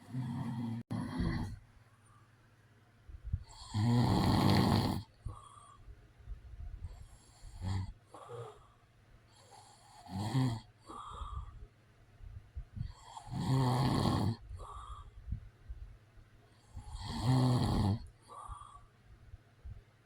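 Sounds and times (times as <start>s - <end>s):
man snoring: 0.0s - 1.6s, 3.5s - 5.5s, 7.3s - 8.7s, 9.4s - 11.5s, 12.9s - 15.0s, 16.7s - 18.8s
soft breath: 0.0s - 2.5s, 5.1s - 10.0s, 10.8s - 13.3s, 14.4s - 17.0s, 18.0s - 19.8s.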